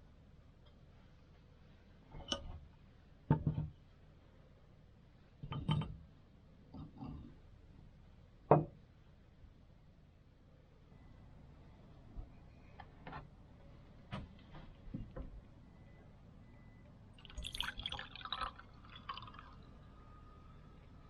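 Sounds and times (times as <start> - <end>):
cups clinking and knocking: 17.2 - 19.6.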